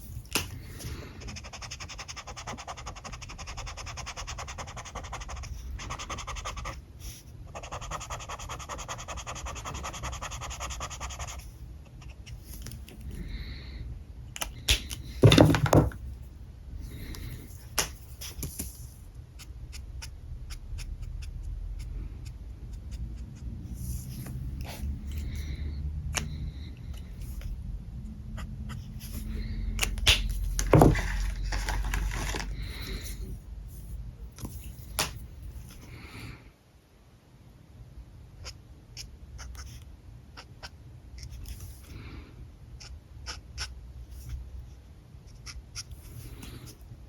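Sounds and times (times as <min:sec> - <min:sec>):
marker rubbing on paper: 0:01.2 - 0:06.8, 0:07.5 - 0:11.4.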